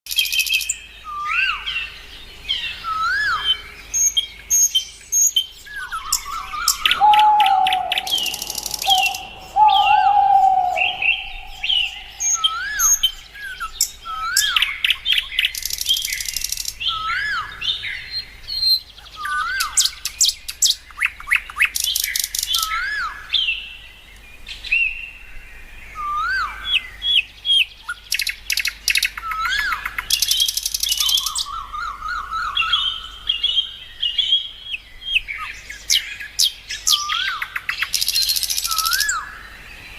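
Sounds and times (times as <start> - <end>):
lower steady bird whistle: 0.1 - 23.7, 24.5 - 39.9
rising and falling whistled birdsong: 0.1 - 39.9
rapid high bird trills: 5.9 - 14.6.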